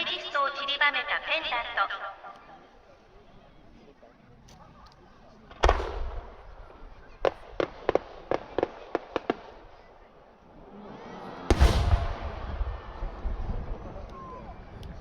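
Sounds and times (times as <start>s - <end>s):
sharp firework cracks: 5.6s - 6.5s, 7.2s - 9.9s, 11.5s - 14.1s
firework shell heavy boom: 11.5s - 14.1s.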